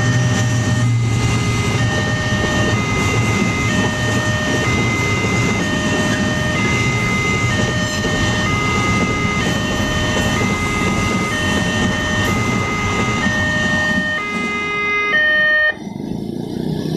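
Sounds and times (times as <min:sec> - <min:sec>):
level crossing alarm: 0:00.0 - 0:15.8
passing train rumble: 0:00.0 - 0:16.9.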